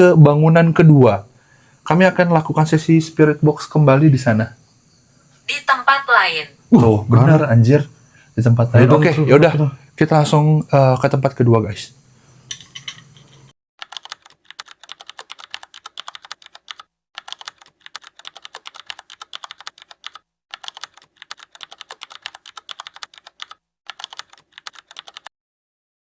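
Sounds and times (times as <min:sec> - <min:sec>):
keyboard typing clicks: 0:13.8 - 0:25.3.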